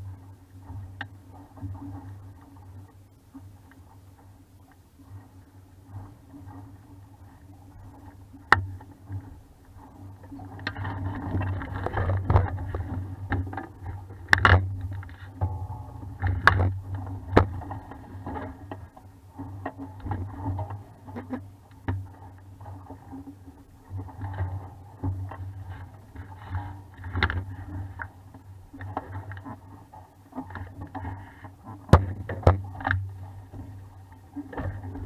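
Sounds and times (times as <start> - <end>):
water washing along hull: 0.0 - 35.0
low rumble: 5.2 - 29.7.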